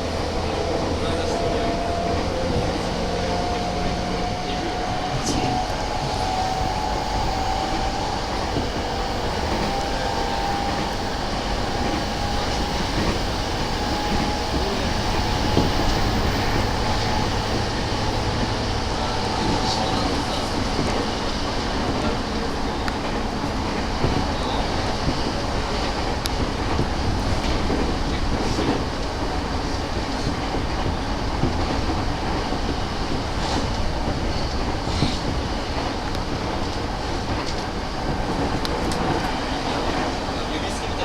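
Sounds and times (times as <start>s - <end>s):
train wheels rumbling on rails: 0.0s - 41.0s
faint train motor whine: 3.3s - 27.8s.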